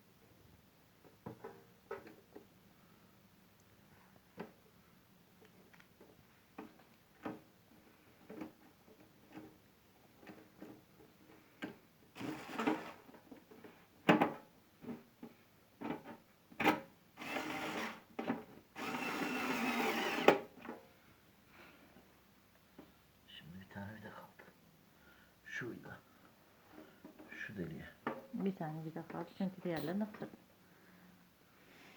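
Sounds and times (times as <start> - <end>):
electric screwdriver running: 12.2 - 13.0, 17.2 - 18.0, 18.8 - 20.5.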